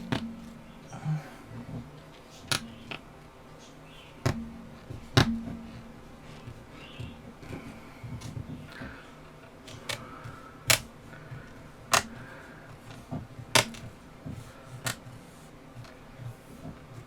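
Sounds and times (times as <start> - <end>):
plastic parts clicking and tapping: 0.0 - 0.6, 1.6 - 3.1, 4.2 - 5.8, 6.4 - 15.1.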